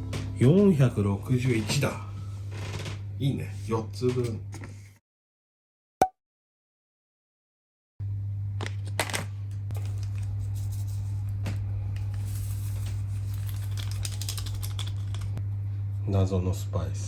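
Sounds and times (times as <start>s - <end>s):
steady low hum: 15.0s - 17.0s.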